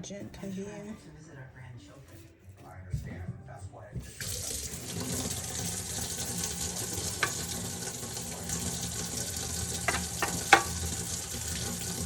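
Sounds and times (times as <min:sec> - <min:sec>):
water running from tap: 0:04.0 - 0:12.0.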